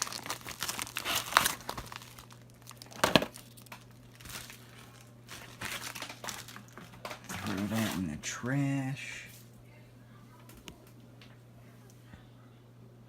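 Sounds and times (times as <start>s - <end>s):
packaging crinkling: 0.0s - 8.1s.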